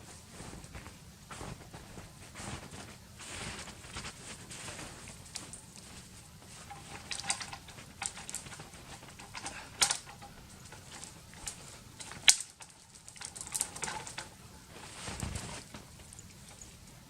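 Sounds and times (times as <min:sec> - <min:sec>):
dry twigs snapping: 0:05.0 - 0:14.4.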